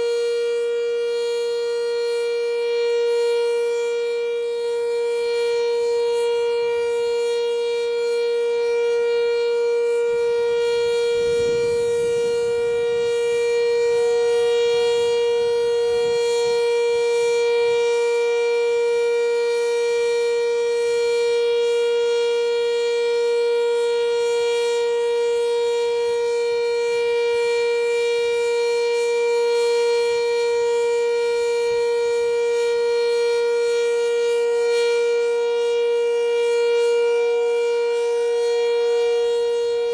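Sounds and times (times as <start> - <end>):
warning siren steady tone: 0.0 - 39.9
low rumble: 11.1 - 13.2.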